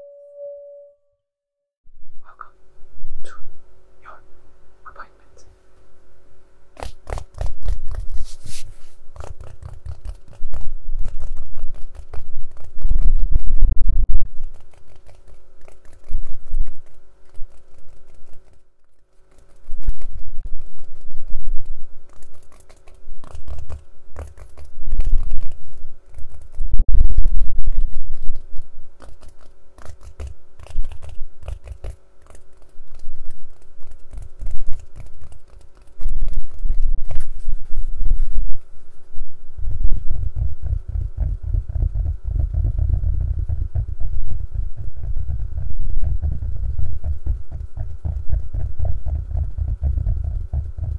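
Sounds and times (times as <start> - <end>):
tapping and scratching on a case: 9.1 - 13.5, 22.1 - 26.8, 29.0 - 36.9, 39.9 - 50.9.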